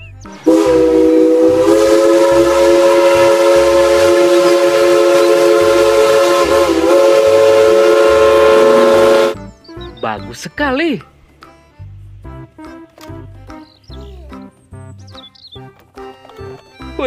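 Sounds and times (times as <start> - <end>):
steam train whistle: 0.4 - 9.4.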